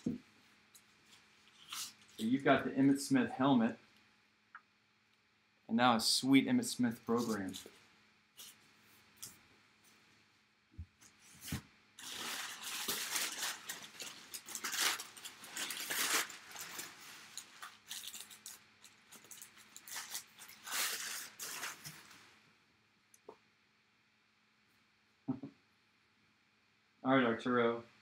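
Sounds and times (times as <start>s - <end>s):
packaging rustling and tearing: 1.1s - 2.2s, 11.4s - 22.3s.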